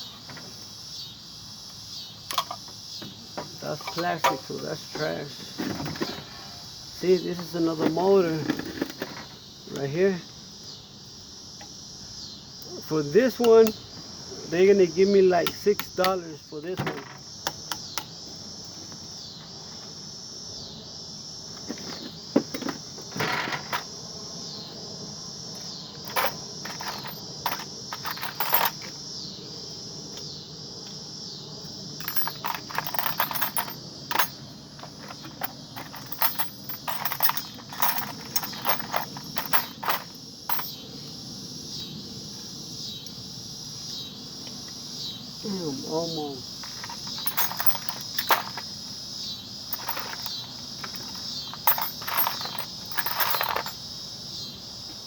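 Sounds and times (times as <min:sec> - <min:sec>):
insects chorus: 0:00.0 - 0:55.0
metal parts and tools clinking: 0:02.3 - 0:02.6, 0:03.6 - 0:05.1, 0:26.0 - 0:28.9, 0:32.0 - 0:40.8, 0:46.6 - 0:48.7, 0:49.7 - 0:53.8.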